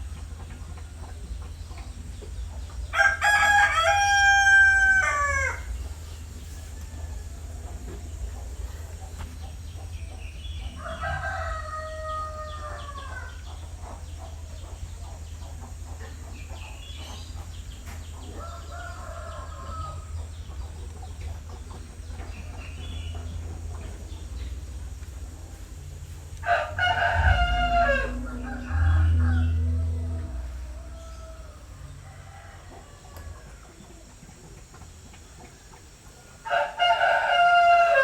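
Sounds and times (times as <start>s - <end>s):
rooster crowing: 2.9s - 5.8s, 10.8s - 13.5s, 18.3s - 20.2s, 26.4s - 33.8s, 36.4s - 38.0s
steady low hum: 5.0s - 34.4s.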